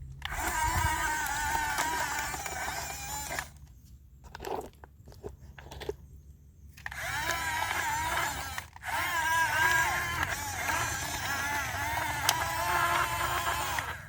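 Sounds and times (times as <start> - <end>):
small electric motor whining: 0.0 - 3.7, 6.8 - 14.0.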